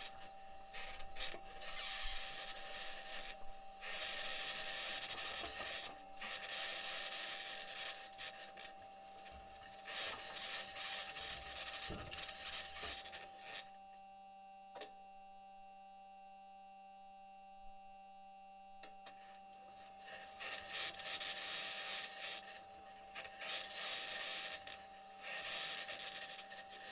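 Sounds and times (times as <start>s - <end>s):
faint steady hum: 0.0s - 26.9s.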